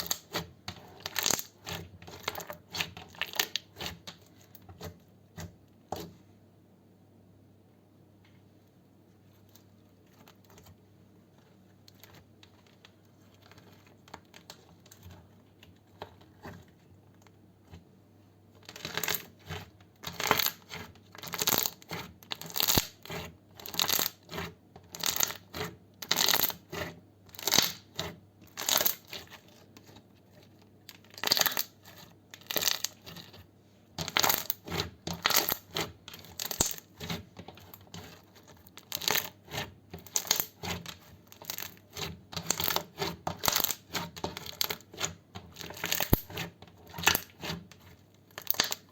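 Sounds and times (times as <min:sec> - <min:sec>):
slime squelching and popping: 0:34.0 - 0:36.9, 0:48.3 - 0:48.9.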